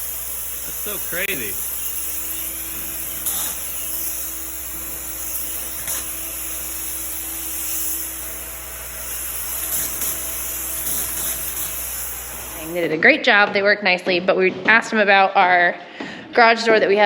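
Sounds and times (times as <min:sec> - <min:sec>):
spray rig hissing: 0:00.0 - 0:13.0
steady tone: 0:00.0 - 0:13.1
low machine hum: 0:00.0 - 0:13.2.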